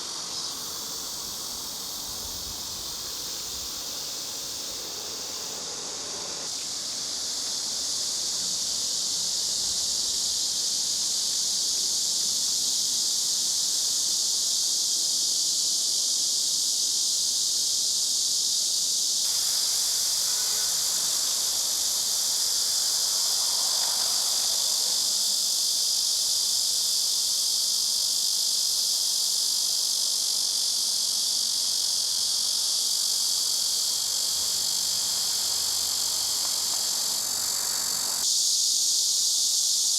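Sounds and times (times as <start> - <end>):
high-pitched insect chorus: 0.0 - 39.9.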